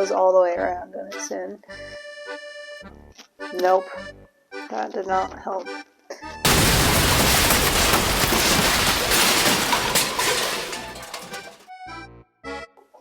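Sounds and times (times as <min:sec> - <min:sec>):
loud crash-like burst: 0:06.5 - 0:11.6.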